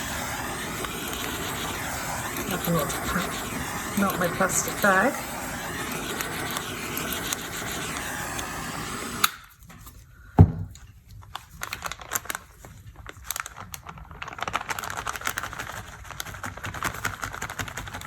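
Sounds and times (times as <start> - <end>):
steady rushing noise: 0.0 - 9.2
knock on work table: 10.4 - 10.7.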